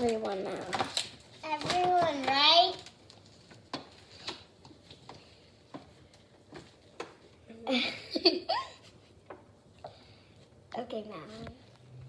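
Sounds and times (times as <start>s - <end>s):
child's voice: 1.4s - 2.9s.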